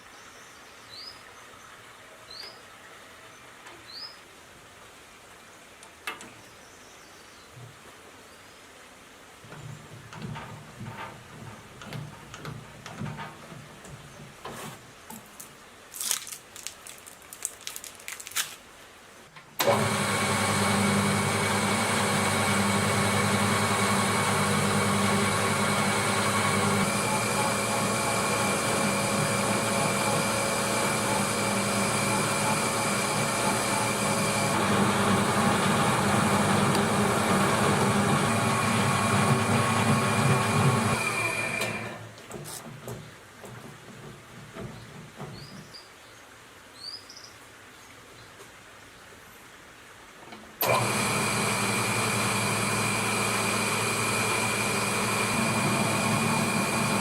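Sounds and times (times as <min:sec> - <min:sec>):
lathe motor humming and whining: 0:19.6 - 0:42.0, 0:50.6 - 0:57.0.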